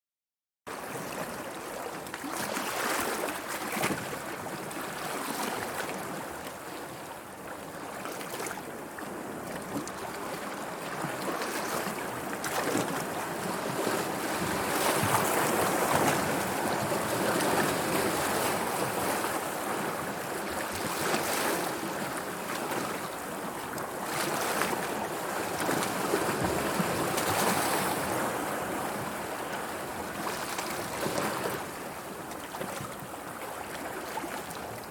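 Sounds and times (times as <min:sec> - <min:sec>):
wave splashes: 0:00.8 - 0:34.9.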